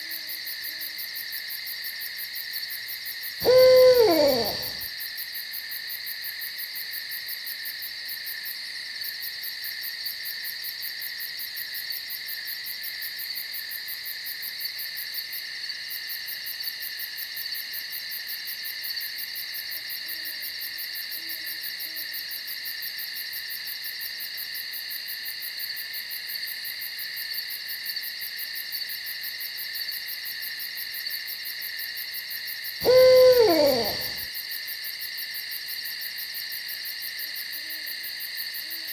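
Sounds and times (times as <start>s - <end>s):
night insects chirping: 3.4s - 4.8s, 32.8s - 34.2s
owl hooting: 3.4s - 4.8s, 32.8s - 34.3s.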